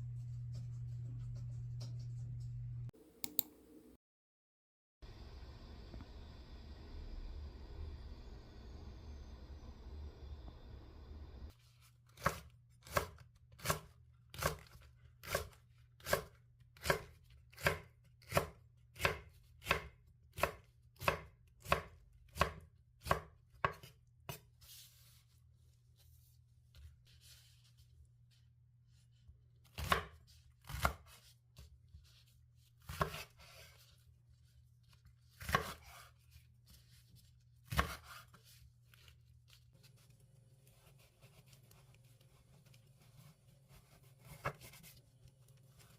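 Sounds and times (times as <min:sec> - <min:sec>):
knife chopping on cutting board: 0:12.2 - 0:23.9, 0:29.7 - 0:31.2, 0:32.8 - 0:33.7, 0:35.3 - 0:36.2, 0:37.6 - 0:38.4.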